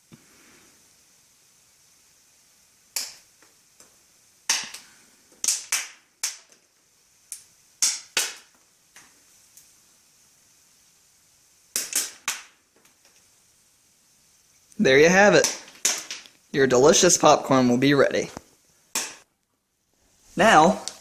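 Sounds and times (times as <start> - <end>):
faint steady hiss: 0.0 - 21.0
popcorn kernels popping: 2.8 - 9.8, 11.6 - 13.3, 14.6 - 16.5, 18.4 - 19.3.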